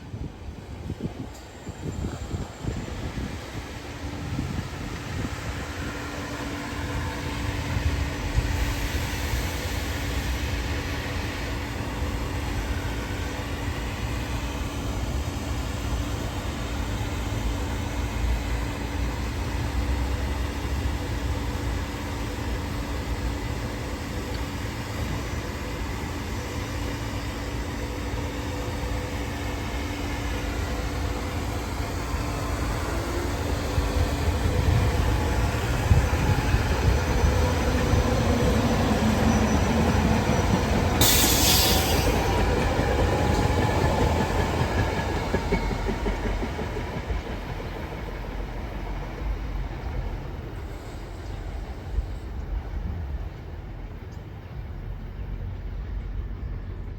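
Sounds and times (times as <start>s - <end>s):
train wheels rumbling on rails: 0.0s - 56.9s
brief high hiss: 41.0s - 42.3s.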